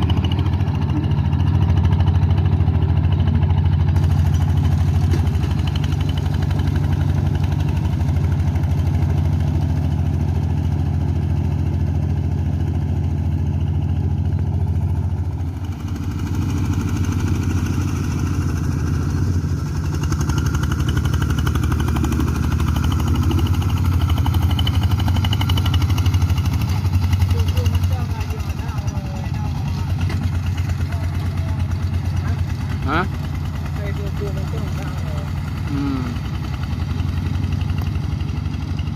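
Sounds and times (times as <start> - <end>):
tractor engine running: 0.0 - 38.9.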